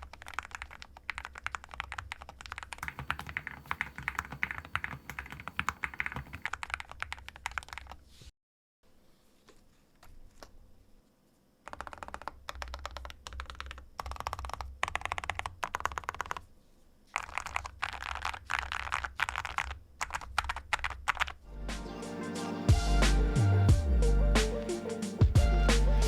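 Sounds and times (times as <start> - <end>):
mechanical keyboard typing: 0.0 - 8.0, 11.7 - 16.4, 17.2 - 21.4
music: 21.5 - 26.0.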